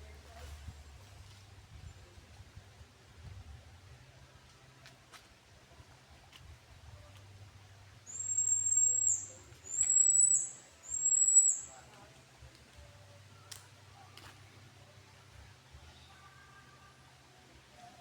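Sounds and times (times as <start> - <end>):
bird whistling: 8.1 - 11.8.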